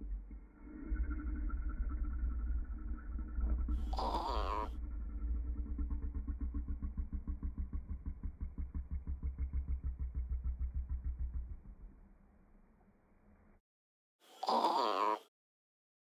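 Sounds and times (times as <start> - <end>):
slowed-down burp rumble: 0.0 - 12.2.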